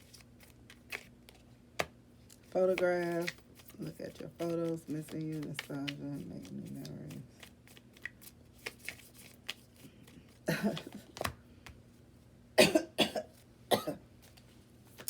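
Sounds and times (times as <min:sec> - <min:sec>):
cards clicking and tapping: 0:00.1 - 0:11.8
person coughing: 0:10.5 - 0:11.0, 0:12.6 - 0:14.0.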